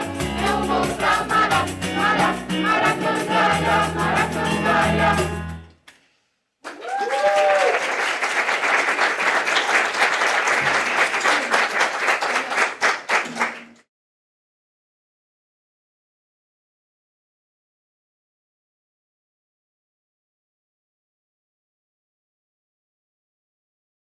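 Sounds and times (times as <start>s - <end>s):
choir singing with instruments: 0.0s - 5.7s
audience cheer: 6.6s - 12.6s
audience applause: 6.6s - 13.8s.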